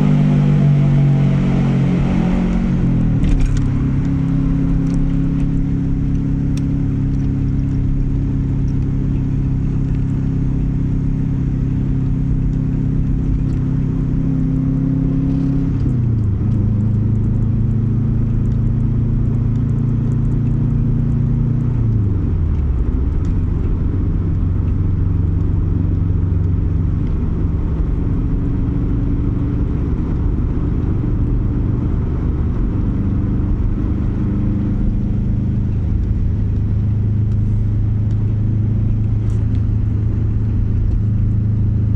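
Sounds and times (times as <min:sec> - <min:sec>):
engine exhaust rumble: 0:00.0 - 0:41.9.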